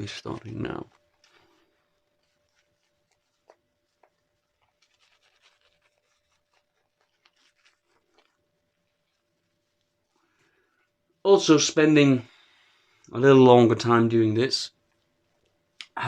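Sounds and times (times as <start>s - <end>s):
shaving brush scratching lather: 0.0s - 10.6s.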